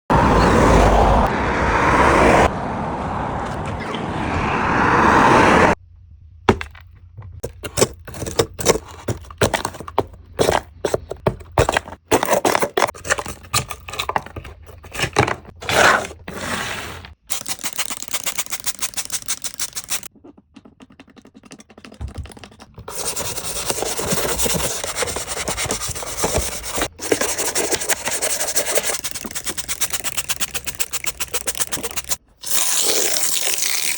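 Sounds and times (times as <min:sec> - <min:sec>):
scrubbing a plastic toy: 0:07.4 - 0:33.9.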